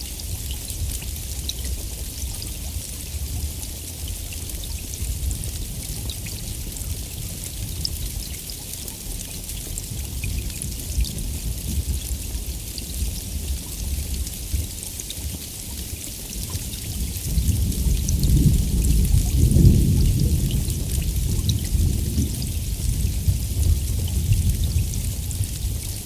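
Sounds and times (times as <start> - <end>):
heavy rain: 0.0 - 26.0
rolling thunder rumble: 17.3 - 26.0.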